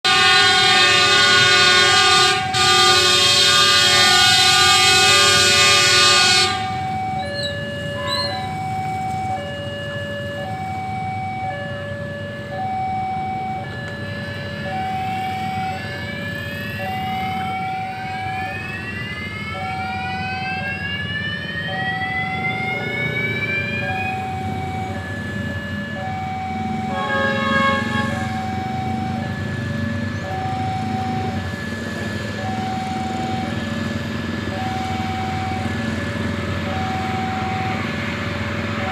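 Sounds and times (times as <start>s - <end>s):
short horn blast: 0.0s - 6.9s, 26.9s - 28.3s
rail vehicle rumble: 0.0s - 38.9s
two-tone hi-lo siren: 0.0s - 38.9s.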